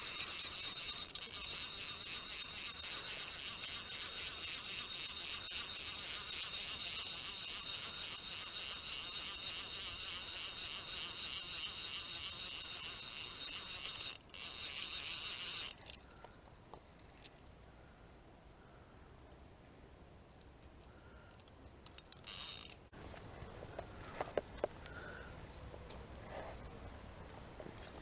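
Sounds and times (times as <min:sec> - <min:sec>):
fishing reel whirring: 0:00.0 - 0:16.0, 0:21.9 - 0:22.8.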